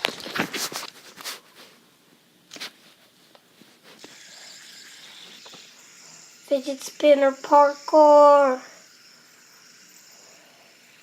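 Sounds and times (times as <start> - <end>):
fidget spinner whirring: 2.6 - 11.0.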